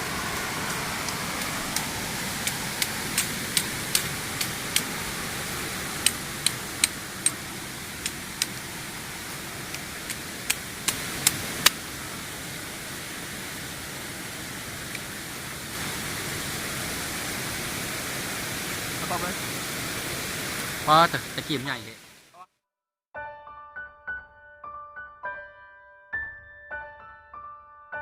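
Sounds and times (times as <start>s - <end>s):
waterfall rushing: 0.0s - 22.3s.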